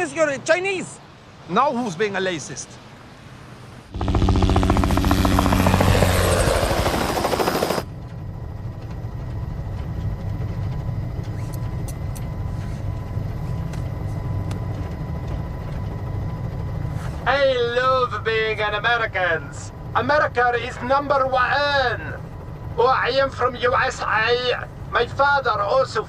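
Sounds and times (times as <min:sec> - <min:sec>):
steady low rumble: 0:03.9 - 0:16.9
helicopter rotor blades chopping: 0:03.9 - 0:26.0.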